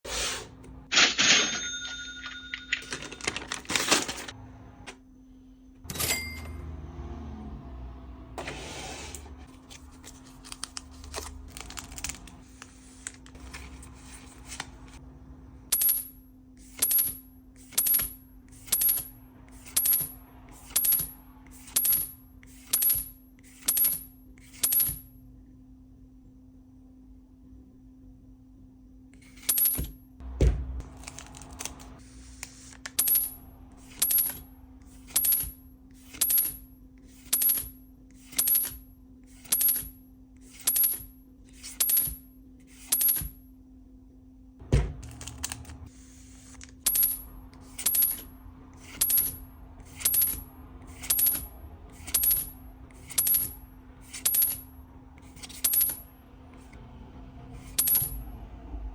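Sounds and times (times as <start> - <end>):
heavier thumps: 30.2 - 30.9, 44.6 - 45.1.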